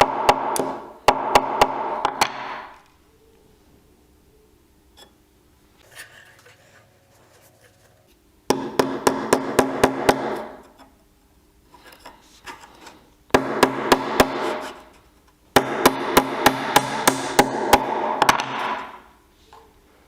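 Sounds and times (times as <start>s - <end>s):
rapid sharp knocks: 8.5s - 10.5s, 13.3s - 14.6s, 15.6s - 18.9s.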